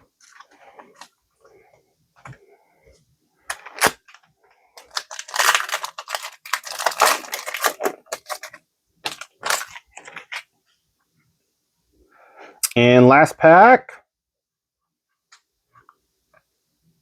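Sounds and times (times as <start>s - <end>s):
foil wrapper crinkling and tearing: 3.5s - 10.5s.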